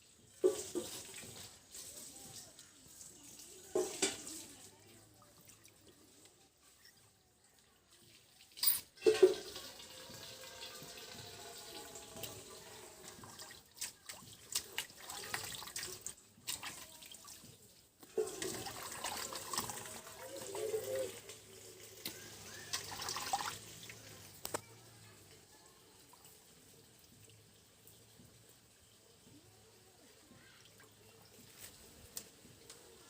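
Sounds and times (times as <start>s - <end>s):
water splashing and pouring: 0.1s - 24.6s.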